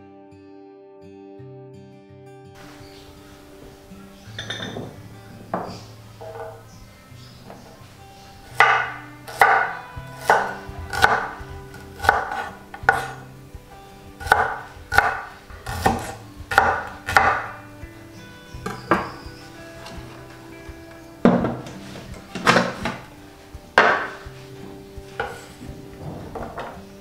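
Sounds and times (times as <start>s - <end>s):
knife chopping on cutting board: 8.5s - 13.2s, 14.2s - 17.6s, 23.8s - 24.2s, 25.2s - 25.5s.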